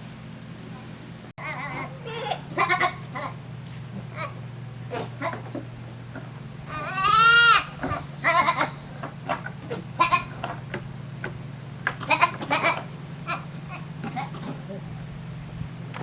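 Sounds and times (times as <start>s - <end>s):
steady low hum: 0.0s - 16.0s
goats bleating: 1.4s - 5.6s, 6.6s - 8.8s, 9.7s - 10.5s, 12.0s - 14.9s.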